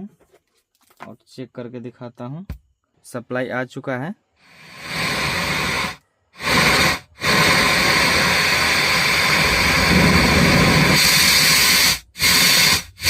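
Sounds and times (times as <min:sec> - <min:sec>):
amplifier speaker hiss: 0:04.4 - 0:13.0.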